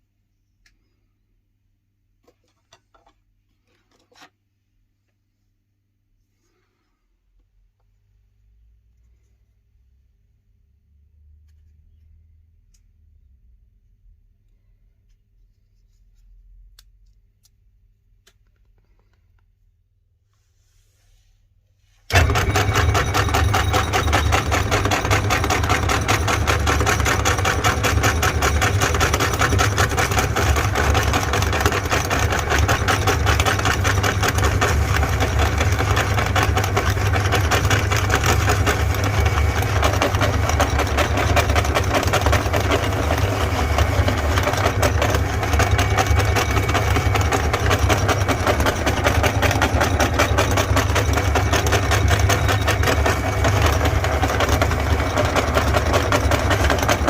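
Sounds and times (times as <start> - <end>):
electric meat grinder running: 22.1 - 57.0.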